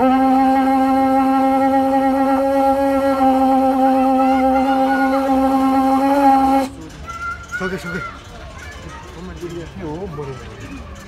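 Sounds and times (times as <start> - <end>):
conch shell blown: 0.0 - 6.8.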